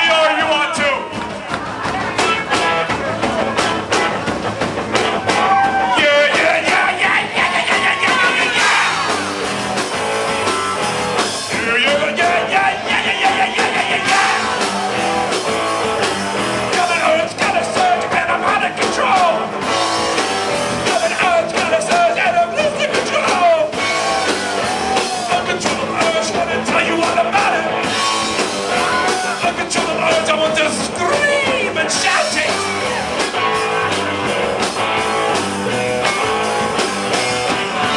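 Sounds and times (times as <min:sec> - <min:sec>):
rock band playing: 0:00.0 - 0:37.9
person singing: 0:05.3 - 0:09.1, 0:11.5 - 0:14.9.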